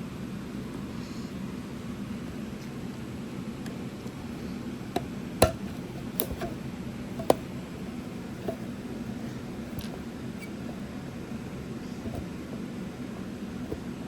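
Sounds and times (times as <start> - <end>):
steady low hum: 0.0 - 14.0
speaker parts clicking: 5.0 - 7.6, 8.2 - 8.8, 9.6 - 10.8.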